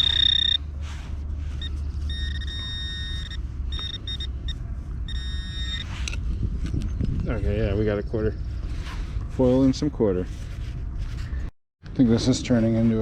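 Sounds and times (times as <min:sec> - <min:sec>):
metal detector beeps: 0:00.0 - 0:00.6, 0:01.6 - 0:05.9.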